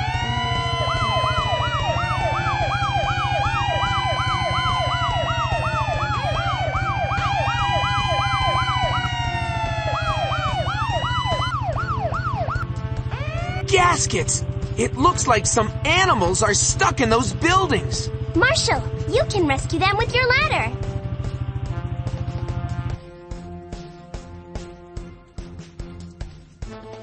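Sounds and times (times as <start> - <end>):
cartoon siren yelp: 0.0 - 14.4, 16.9 - 20.8
siren wails: 0.0 - 22.6.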